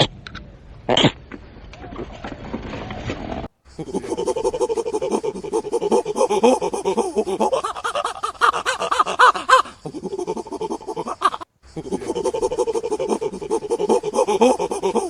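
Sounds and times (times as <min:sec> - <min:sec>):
farm animals calling: 0:03.7 - 0:15.0.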